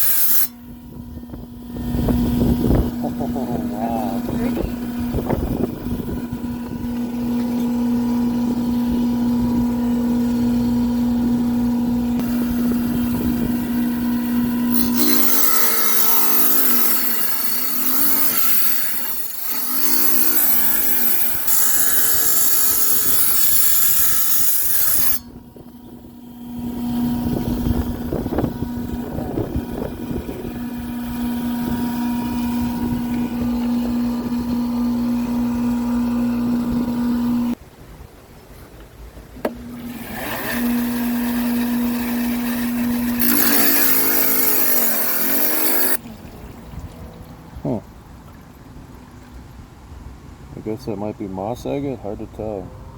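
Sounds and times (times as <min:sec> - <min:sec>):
saw blade grinding stone: 0:00.0 - 0:00.6, 0:01.7 - 0:05.5, 0:12.1 - 0:37.6, 0:39.7 - 0:46.0
tile saw motor hum: 0:00.0 - 0:37.6, 0:39.4 - 0:46.1.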